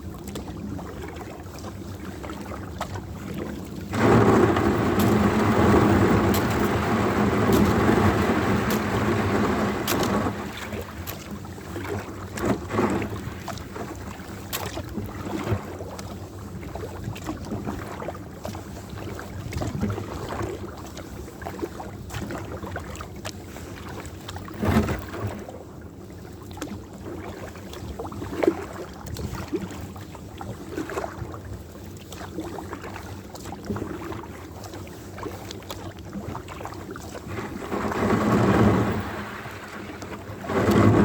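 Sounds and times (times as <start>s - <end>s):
paddle strokes in water: 0.0s - 41.0s
water lapping against hull: 0.0s - 41.0s
wind noise on microphone: 3.8s - 13.8s, 37.1s - 41.0s.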